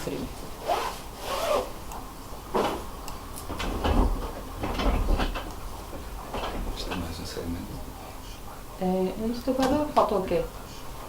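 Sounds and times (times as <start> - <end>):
rubbing and scraping handling noises: 0.6 - 1.7.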